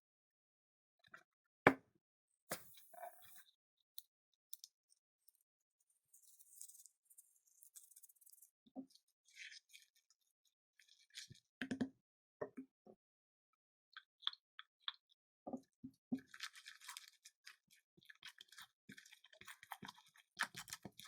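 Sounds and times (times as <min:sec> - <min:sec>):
crackles and clicks of handling: 0:02.5 - 0:09.8.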